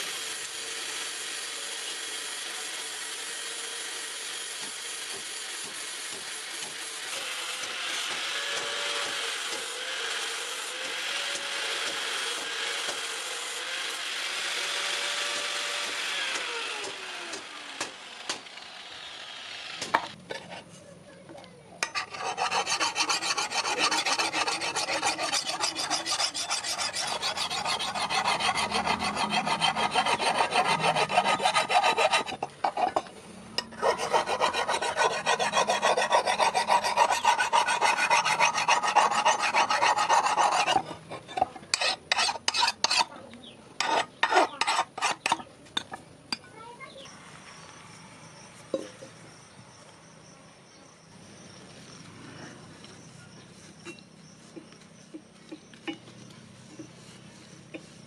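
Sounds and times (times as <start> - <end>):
hand filing strokes: 4.4 - 13.7, 21.8 - 43.2, 43.8 - 45.5, 56.6 - 58.0
grinding on steel blade: 21.8 - 43.2, 43.8 - 45.9.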